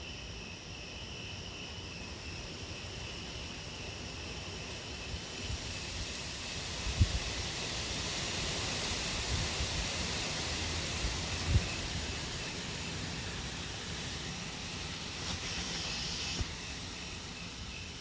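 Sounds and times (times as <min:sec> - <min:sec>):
crickets chirping: 0:00.0 - 0:18.0
steady hissing rumble: 0:00.0 - 0:18.0
wind bump on microphone: 0:05.4 - 0:07.5, 0:11.0 - 0:12.2.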